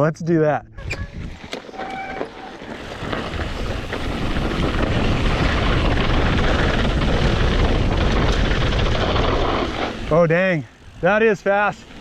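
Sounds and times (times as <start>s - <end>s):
wind rushing over microphone: 0.7s - 1.5s, 2.8s - 10.1s.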